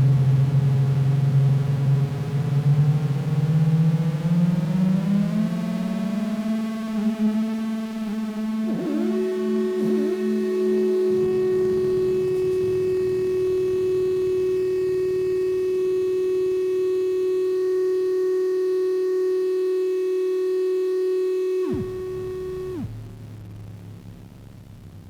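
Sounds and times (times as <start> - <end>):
synthesizer drone: 4.0 - 22.9.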